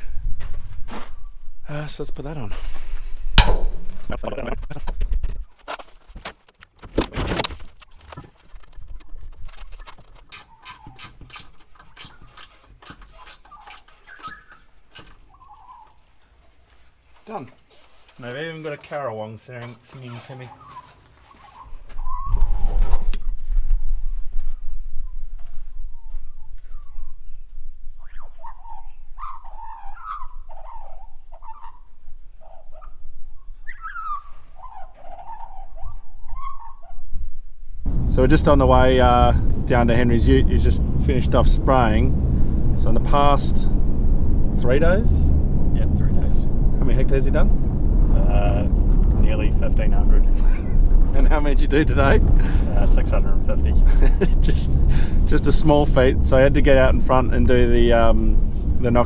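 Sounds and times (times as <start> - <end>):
knocks of part being fitted: 3.4 - 3.8
bird warbling call: 10.3 - 11.2, 13.1 - 16.0, 20.5 - 23.1, 28.0 - 37.1.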